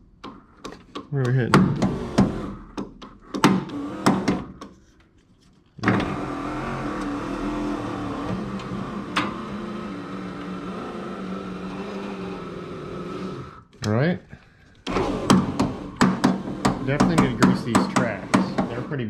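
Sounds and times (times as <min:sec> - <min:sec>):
power window motor running: 0:01.8 - 0:02.6, 0:03.4 - 0:04.6, 0:05.8 - 0:13.6, 0:14.9 - 0:19.0.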